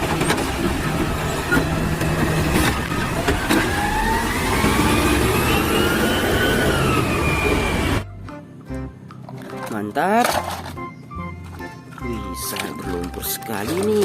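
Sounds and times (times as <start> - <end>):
truck engine running: 0.0 - 14.0
rising whine: 1.0 - 8.1.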